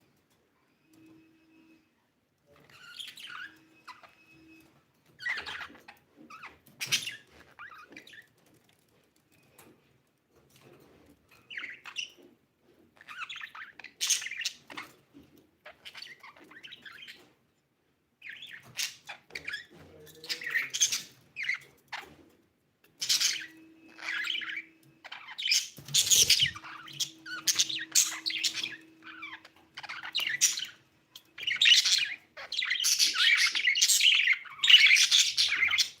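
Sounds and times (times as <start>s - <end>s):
budgerigar chirping: 5.2s - 8.3s, 13.0s - 15.0s, 23.0s - 36.0s.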